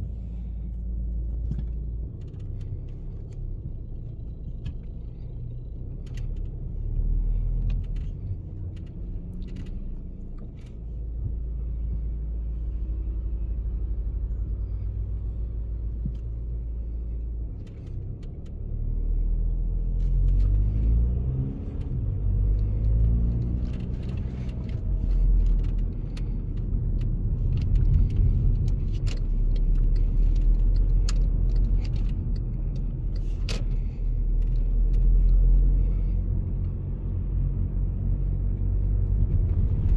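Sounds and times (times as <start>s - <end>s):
car engine and road rumble: 0.0s - 39.9s
small clicks and knocks: 21.7s - 35.6s.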